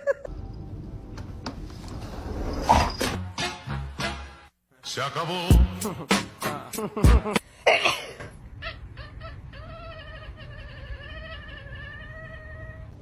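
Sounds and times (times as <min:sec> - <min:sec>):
cat yowling: 0:08.7 - 0:13.0.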